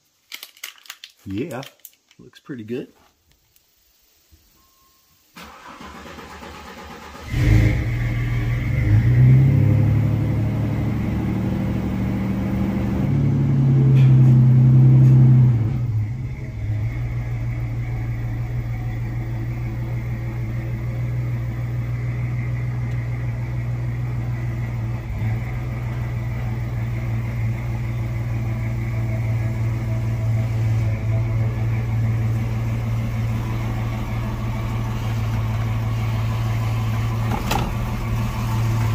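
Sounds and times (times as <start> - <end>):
truck engine starting and revving: 5.4 - 38.9.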